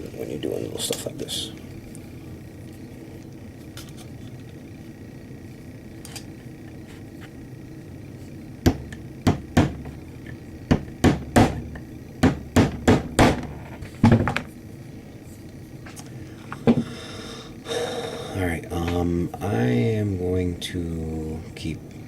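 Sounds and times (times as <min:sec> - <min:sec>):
hammer tapping nylon punch: 0:08.7 - 0:10.0, 0:10.7 - 0:13.6.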